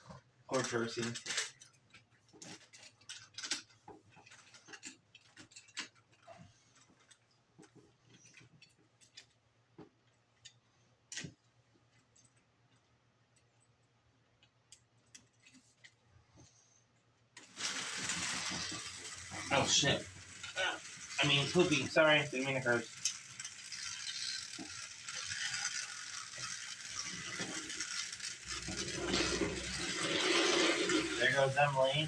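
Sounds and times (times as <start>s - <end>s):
plastic toy train clicks: 0.5s - 7.2s, 17.4s - 32.0s
loud noisy clatter: 17.4s - 32.0s.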